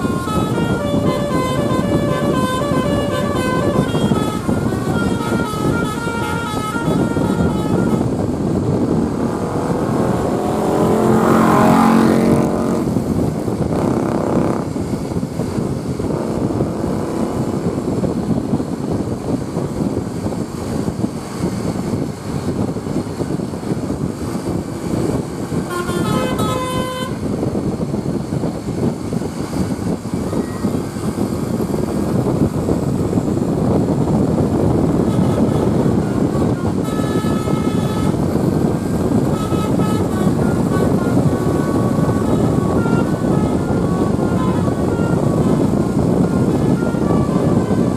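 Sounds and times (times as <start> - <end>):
loud vehicle passing: 0.0 - 19.4, 24.0 - 30.1, 31.0 - 47.9
bus multi-tone horn: 0.0 - 21.8, 22.4 - 27.9, 31.0 - 47.9
traffic and bus engine noise: 0.0 - 47.9.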